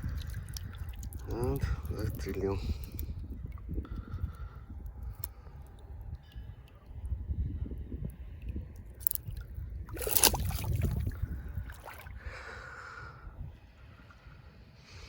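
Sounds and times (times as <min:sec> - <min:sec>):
water sloshing and gurgling: 0:00.0 - 0:12.9
water splash: 0:09.0 - 0:12.1.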